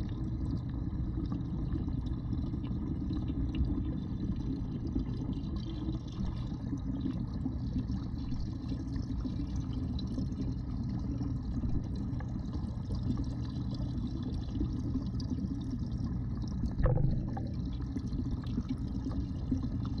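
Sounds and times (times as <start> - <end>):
muffled underwater waterfall rush: 5.6 - 7.2, 16.6 - 20.0.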